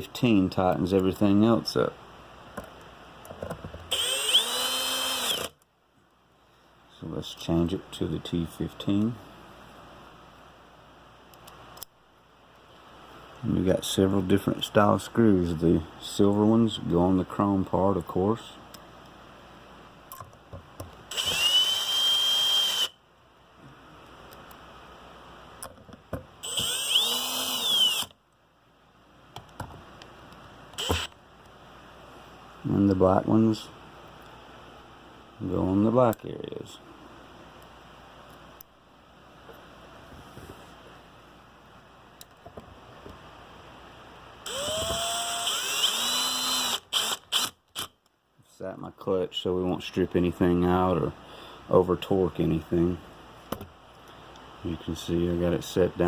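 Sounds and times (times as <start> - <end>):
cordless drill whining: 3.9 - 5.5, 21.1 - 22.9, 26.4 - 28.1, 30.8 - 31.1, 44.4 - 47.9.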